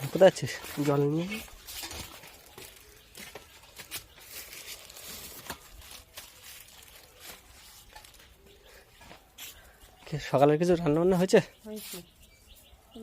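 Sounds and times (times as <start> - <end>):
handling clicks and rustles: 0.0 - 8.5.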